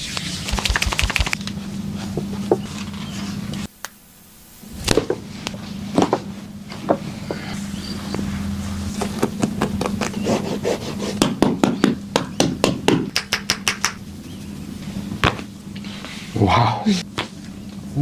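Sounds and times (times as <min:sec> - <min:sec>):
percussive massage strikes: 0:00.4 - 0:01.4, 0:09.0 - 0:10.2, 0:11.1 - 0:14.0.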